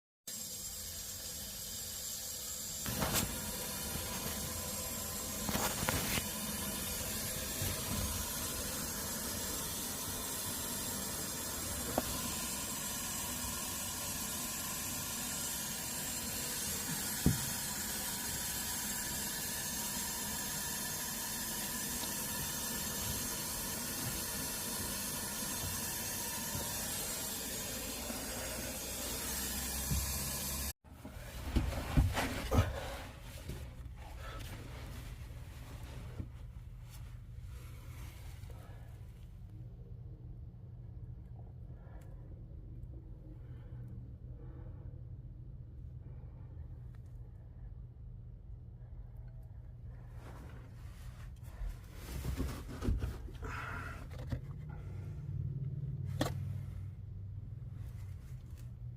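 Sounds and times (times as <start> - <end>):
water running from tap: 0.3 - 30.8.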